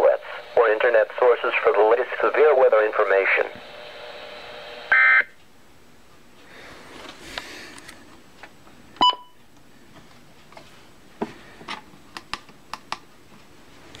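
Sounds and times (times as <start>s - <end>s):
short electronic beep: 9.0s - 9.4s.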